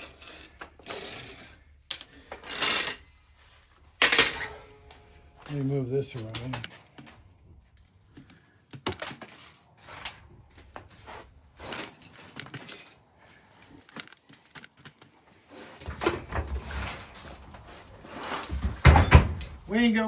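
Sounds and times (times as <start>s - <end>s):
metal tools clanking: 4.0s - 6.8s, 11.6s - 13.1s, 15.5s - 17.4s, 18.1s - 20.0s
heavy thuds and shuffling: 15.8s - 19.9s.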